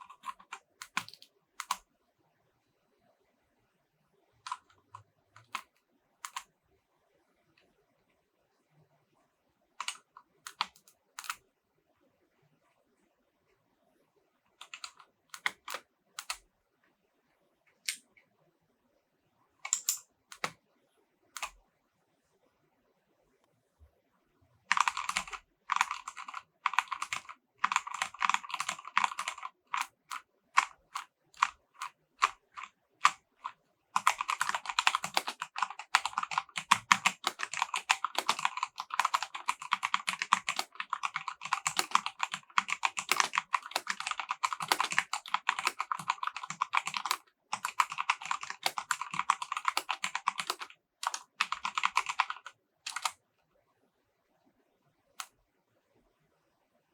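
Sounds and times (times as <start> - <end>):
mechanical keyboard typing: 0.0 - 1.9, 4.4 - 6.5, 9.8 - 11.4, 14.6 - 16.4, 19.6 - 20.6, 21.4 - 21.6, 24.7 - 53.2.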